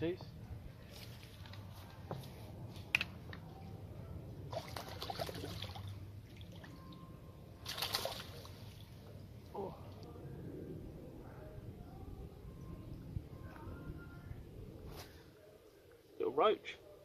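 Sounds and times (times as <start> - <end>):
water splashing and dripping: 4.5 - 6.9, 7.6 - 9.0.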